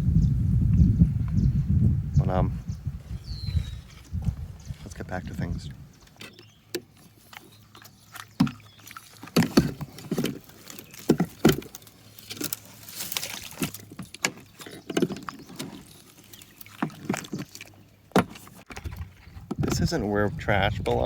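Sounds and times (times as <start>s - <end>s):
water splashing off paddle: 6.9s - 19.8s.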